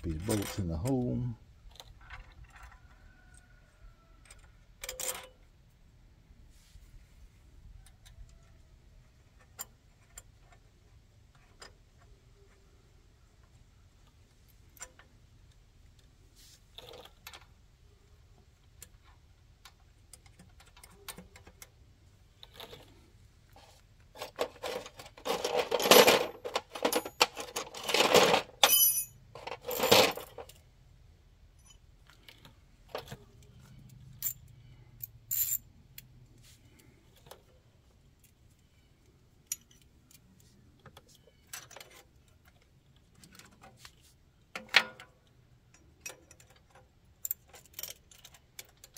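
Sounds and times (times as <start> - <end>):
metal tools clinking: 24.2 - 30.6, 31.6 - 35.7.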